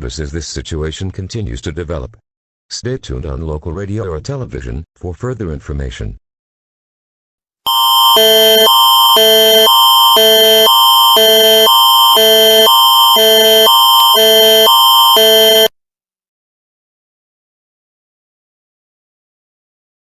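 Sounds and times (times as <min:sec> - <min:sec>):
two-pitch alarm tone: 0:07.7 - 0:15.7.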